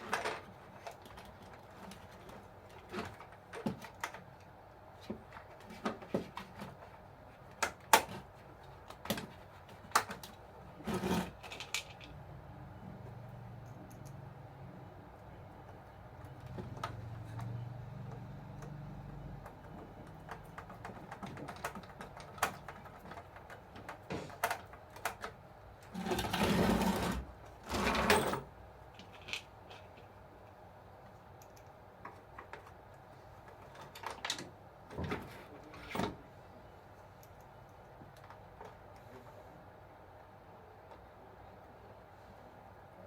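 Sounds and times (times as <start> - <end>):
small parts clicking and tapping: 11.3 - 12.2, 13.0 - 14.3, 15.2 - 26.0, 31.0 - 34.5.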